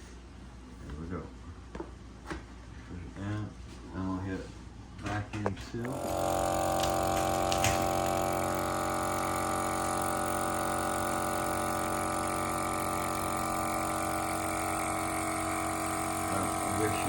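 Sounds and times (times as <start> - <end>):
vacuum sealer pump humming: 5.8 - 17.0.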